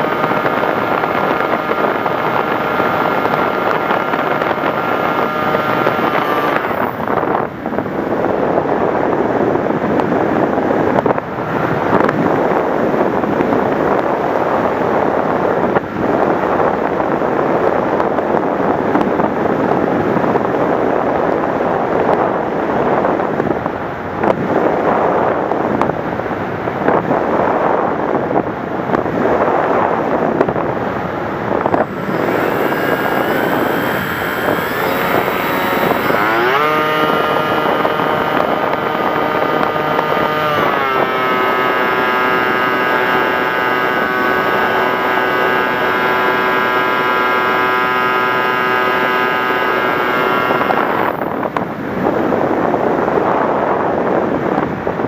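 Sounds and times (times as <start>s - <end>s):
model helicopter engine: 0.0s - 8.7s, 30.7s - 52.4s
wind buffeting microphone: 0.0s - 55.0s.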